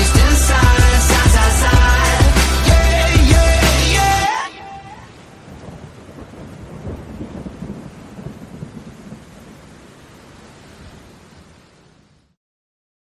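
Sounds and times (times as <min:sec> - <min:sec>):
rain: 0:00.0 - 0:12.4
rolling thunder: 0:04.9 - 0:10.2.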